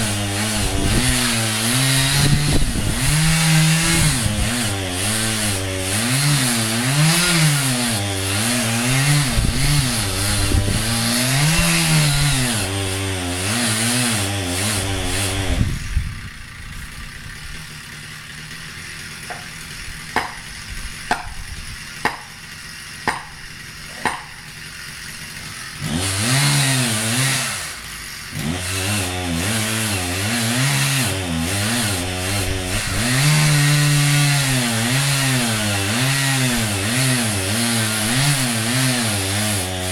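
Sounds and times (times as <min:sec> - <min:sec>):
chainsaw cutting wood: 0:00.0 - 0:39.9
sharp knocks: 0:20.1 - 0:20.5, 0:21.1 - 0:22.4, 0:23.0 - 0:23.4, 0:24.0 - 0:24.4.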